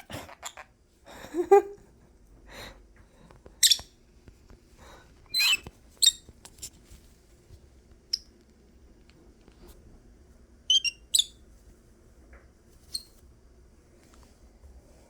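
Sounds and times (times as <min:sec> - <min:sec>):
lovebird squeaking: 0:03.6 - 0:03.9, 0:05.3 - 0:06.3, 0:10.7 - 0:11.4, 0:12.9 - 0:13.2.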